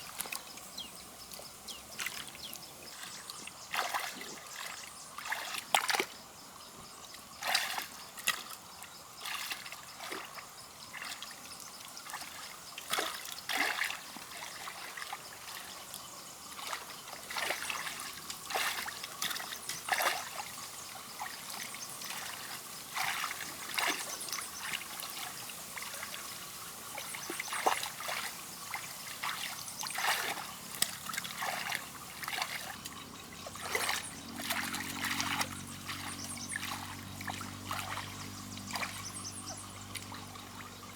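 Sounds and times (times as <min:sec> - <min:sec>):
shallow water trickling: 0:00.0 - 0:40.9
sharp water splashes: 0:03.7 - 0:06.1, 0:16.6 - 0:40.6.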